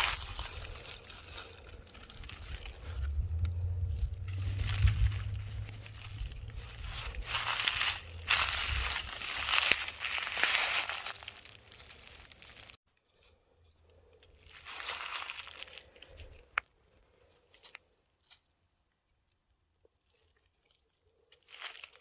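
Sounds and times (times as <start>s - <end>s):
footsteps crunching dry leaves: 0.0s - 12.8s, 14.4s - 16.4s.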